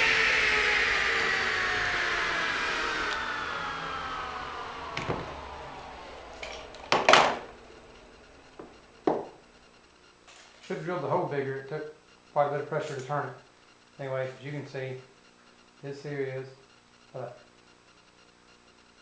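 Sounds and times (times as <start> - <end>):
table saw whine winding down: 0.0 - 9.8
wood knocking: 6.8 - 7.4, 8.6 - 9.4.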